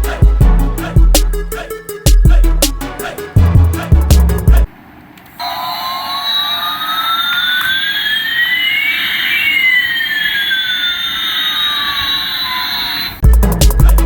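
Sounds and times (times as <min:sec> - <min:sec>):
whining tones: 0:05.4 - 0:13.2.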